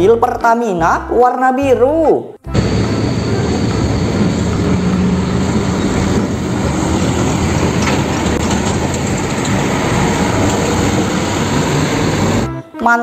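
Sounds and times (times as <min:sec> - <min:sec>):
dense vehicle-like noise: 0:02.5 - 0:12.5
low hum: 0:02.5 - 0:12.5.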